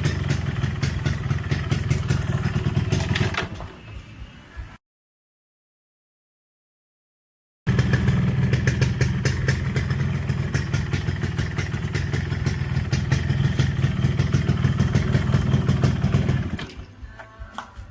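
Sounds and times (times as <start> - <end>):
two-stroke motorcycle engine running: 0.0 - 3.7, 7.7 - 16.9.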